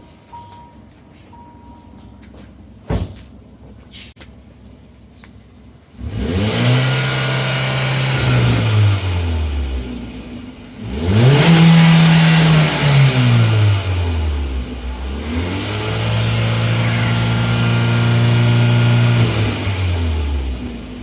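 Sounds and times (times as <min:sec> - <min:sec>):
car engine revving: 0:05.9 - 0:21.0.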